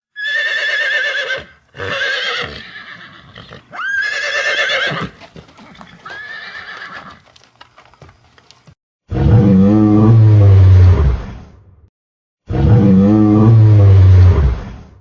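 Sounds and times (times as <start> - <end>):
horse whinnying: 0.2 - 7.2.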